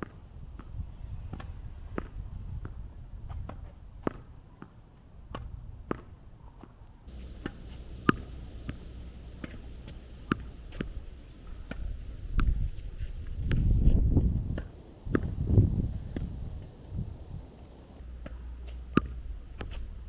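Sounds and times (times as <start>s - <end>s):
low background rumble: 7.1s - 20.0s.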